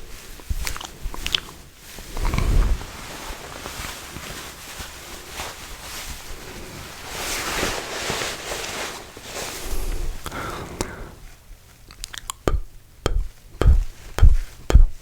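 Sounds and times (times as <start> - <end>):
wet mouth clicks: 0.6 - 1.5, 11.9 - 15.0
breathy hiss on microphone: 0.6 - 3.4.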